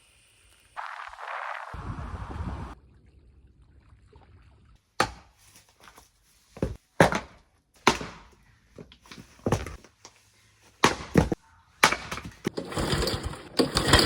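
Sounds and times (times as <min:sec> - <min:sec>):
wood chopping blows: 0:10.8 - 0:12.5.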